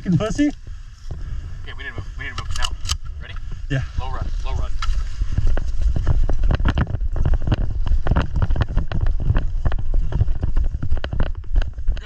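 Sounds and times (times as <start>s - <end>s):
wind rumble on microphone: 0.0s - 12.0s
running footsteps on dirt: 4.8s - 12.0s.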